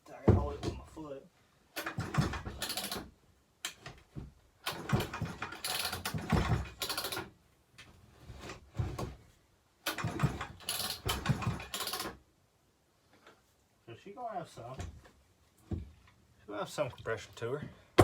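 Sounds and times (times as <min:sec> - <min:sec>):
chainsaw pull-starter cranking: 0:01.8 - 0:03.1, 0:04.6 - 0:07.3, 0:09.9 - 0:12.2.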